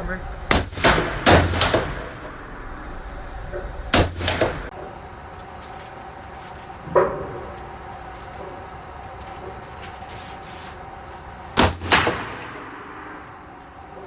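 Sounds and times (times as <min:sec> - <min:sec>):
rifle shots: 0:00.5 - 0:02.6.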